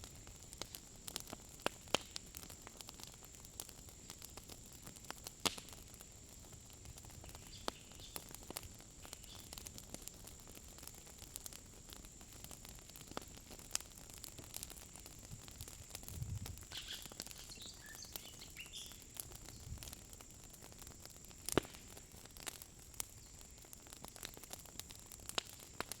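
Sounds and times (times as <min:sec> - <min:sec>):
sharp crackles and clicks: 0:00.0 - 0:26.0
bird chirps: 0:16.7 - 0:19.7.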